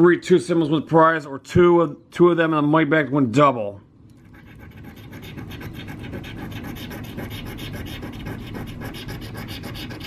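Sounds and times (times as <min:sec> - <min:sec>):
scratching a scratch-off ticket: 0:04.2 - 0:10.0.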